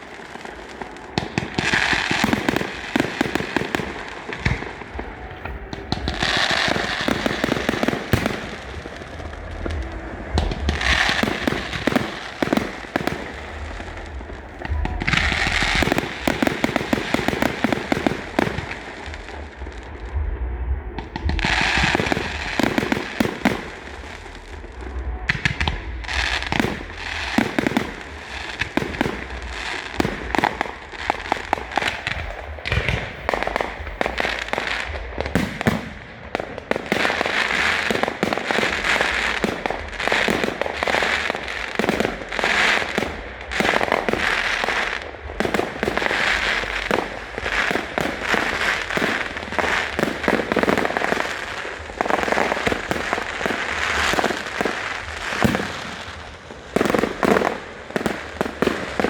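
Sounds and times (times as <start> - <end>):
fireworks bangs: 0.0 - 59.0
fireworks crackling: 0.0 - 59.0.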